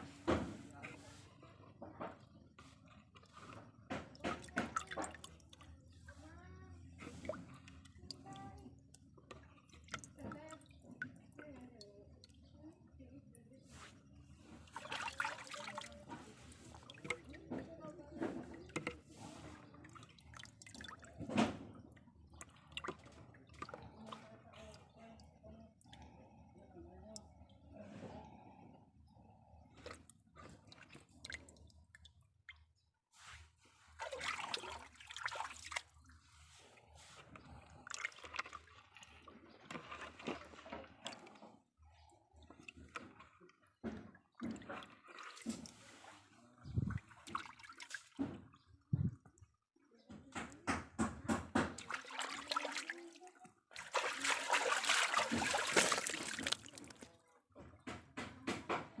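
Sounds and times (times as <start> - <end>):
water splashing and dripping: 2.0 - 6.4, 7.0 - 12.8, 13.7 - 25.2, 29.8 - 32.6, 33.3 - 41.5, 42.5 - 49.6, 51.3 - 58.0
wet squelching: 13.8 - 17.4, 33.9 - 41.5, 51.8 - 57.1.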